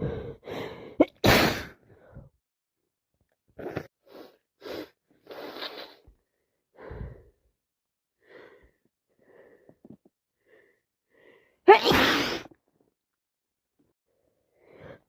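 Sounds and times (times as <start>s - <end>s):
person breathing noisily: 0.0s - 1.0s
person sneezing: 1.0s - 1.8s, 11.7s - 12.5s.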